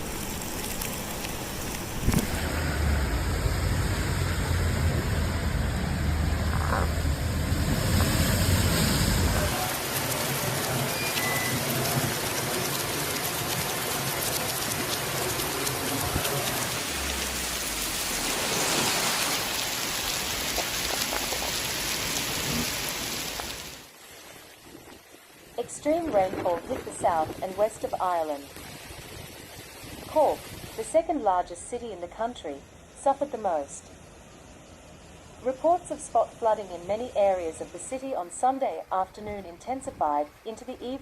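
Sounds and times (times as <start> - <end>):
heavy rain: 0.0 - 41.0
low rumble: 1.7 - 9.6.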